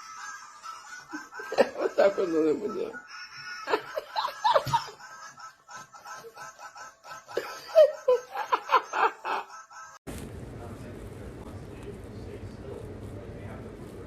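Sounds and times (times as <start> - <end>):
person laughing: 0.4 - 10.0.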